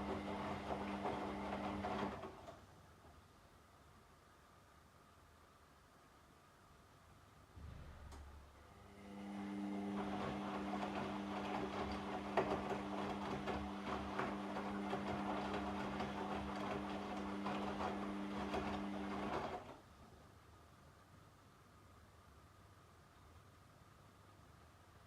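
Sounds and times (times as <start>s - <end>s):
washing machine motor hum: 0.0s - 2.6s, 7.6s - 19.8s.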